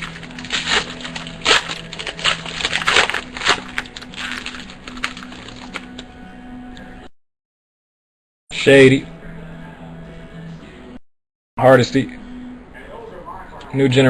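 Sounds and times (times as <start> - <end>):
cards rustling: 0.0 - 6.1
foil wrapper crinkling: 0.0 - 6.1
faint background music: 0.0 - 7.1, 8.5 - 11.0, 11.6 - 14.0.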